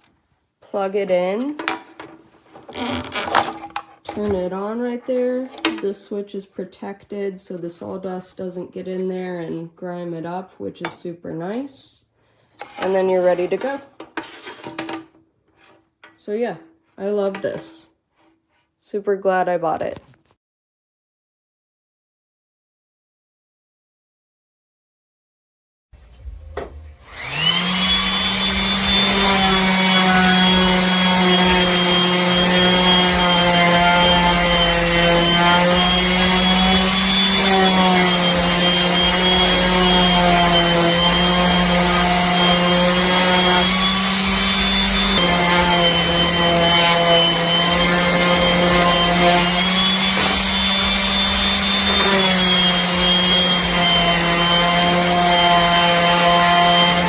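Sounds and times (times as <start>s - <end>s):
random orbital sander whining: 27.0s - 57.0s.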